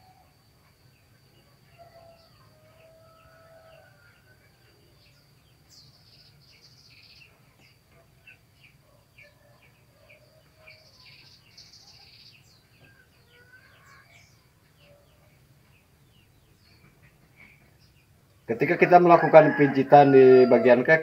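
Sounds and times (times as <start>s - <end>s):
birds chirping: 0.0s - 21.0s.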